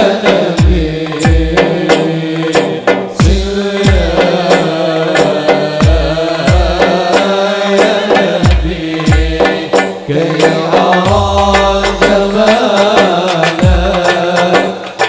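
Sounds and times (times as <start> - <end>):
devotional melody over percussion: 0.0 - 15.0
deep drum strokes: 10.6 - 14.0.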